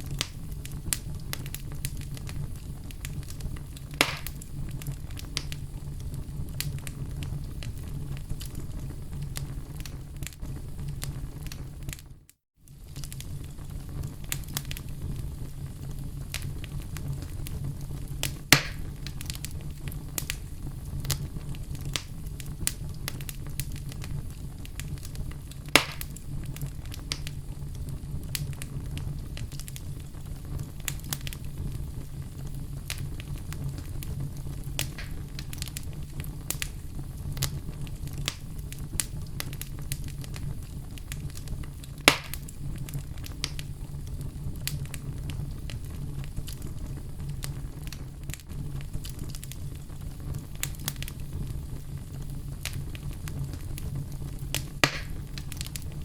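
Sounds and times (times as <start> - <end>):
sharp pops of fire: 0.0 - 12.0, 12.7 - 56.0
wood fire crackling: 0.0 - 56.0.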